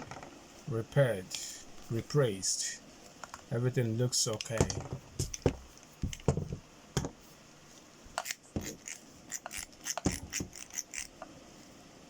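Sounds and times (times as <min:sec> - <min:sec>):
headphones clicking and knocking: 0:04.4 - 0:07.2.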